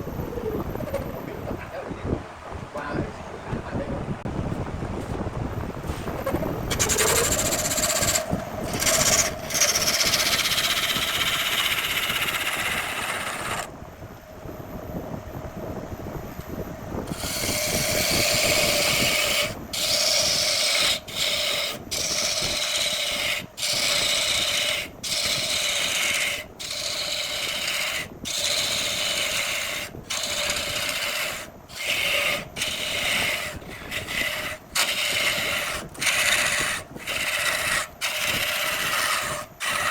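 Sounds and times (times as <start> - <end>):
turning tool scraping wood: 5.8 - 13.7, 17.1 - 39.9
lathe humming: 6.7 - 13.7, 17.0 - 39.9.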